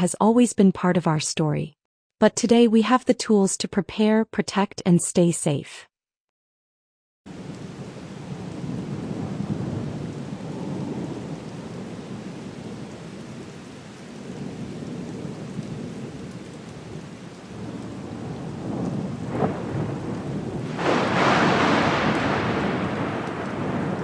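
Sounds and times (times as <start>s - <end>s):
thunder rumbling: 7.3s - 13.6s, 14.2s - 24.0s
steady rain: 7.3s - 24.0s.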